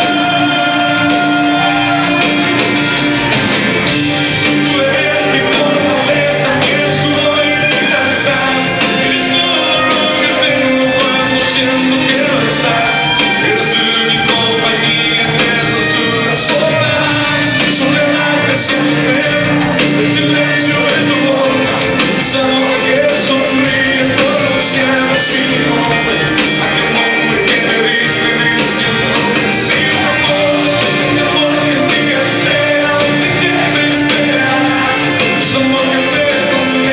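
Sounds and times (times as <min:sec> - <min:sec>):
live band playing pop-rock: 0:00.0 - 0:36.9
person singing: 0:00.0 - 0:36.9.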